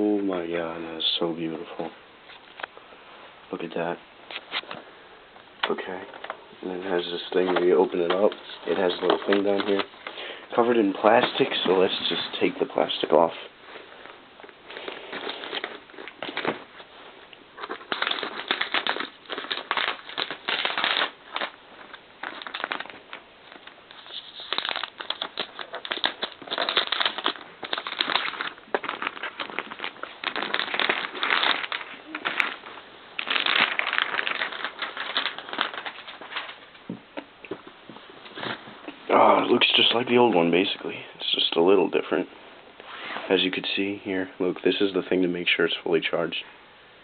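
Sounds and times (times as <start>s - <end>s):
plastic film crinkling: 5.6s - 41.7s.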